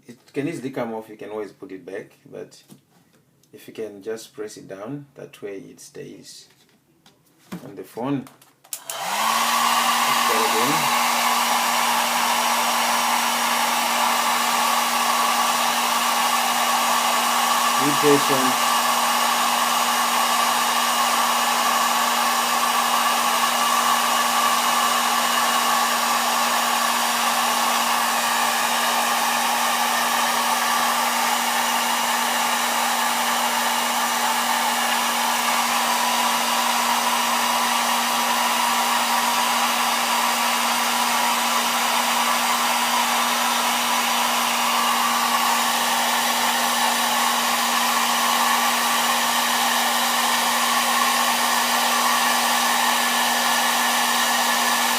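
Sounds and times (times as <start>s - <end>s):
hot-air blower running: 8.7s - 54.9s.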